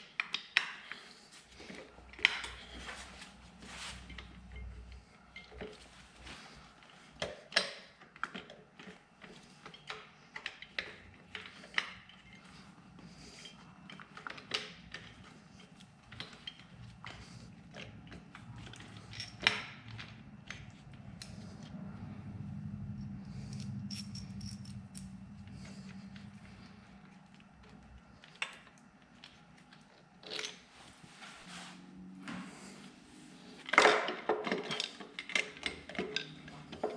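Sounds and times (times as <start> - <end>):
metal tools clinking and knocking: 13.4 - 21.7, 22.9 - 25.4, 33.7 - 36.9.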